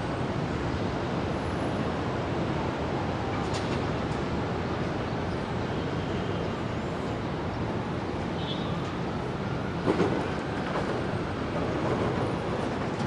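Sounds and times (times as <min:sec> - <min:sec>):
train rumbling: 0:09.6 - 0:13.0.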